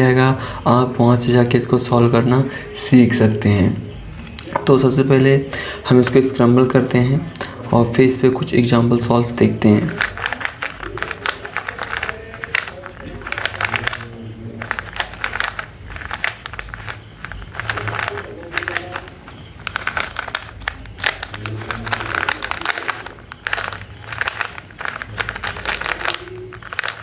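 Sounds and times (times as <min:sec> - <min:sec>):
puzzle cube clicking: 0:09.7 - 0:27.0.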